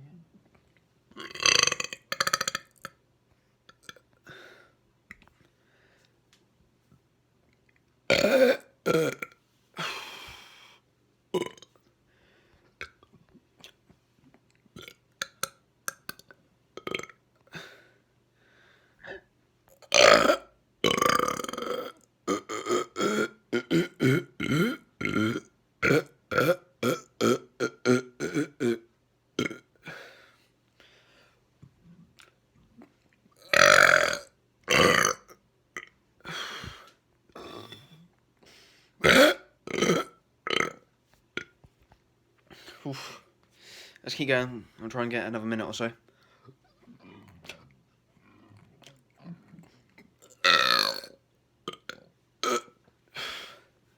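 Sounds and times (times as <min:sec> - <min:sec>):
person burping: 0:01.1 - 0:02.9, 0:08.1 - 0:10.1, 0:11.4 - 0:11.7, 0:16.8 - 0:17.8, 0:19.8 - 0:30.0, 0:33.4 - 0:35.9, 0:37.4 - 0:38.0, 0:39.0 - 0:41.6, 0:50.2 - 0:53.4.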